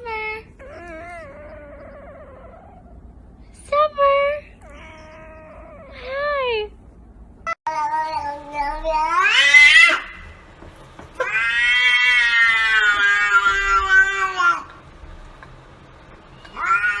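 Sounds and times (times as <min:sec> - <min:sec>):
cat meowing: 0:08.5 - 0:10.2, 0:11.2 - 0:14.8, 0:16.4 - 0:17.0.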